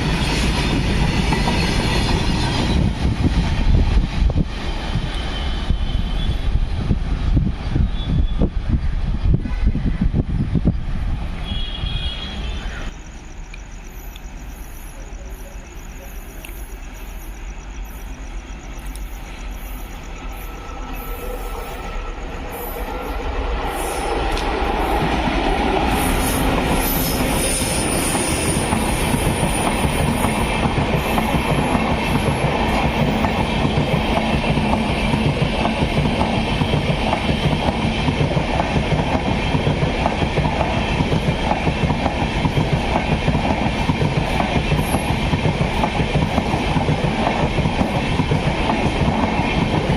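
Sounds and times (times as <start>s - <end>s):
train rumble: 0.0s - 49.9s
wheels clattering on rails: 24.2s - 49.9s
high wheel squeal: 25.9s - 30.4s.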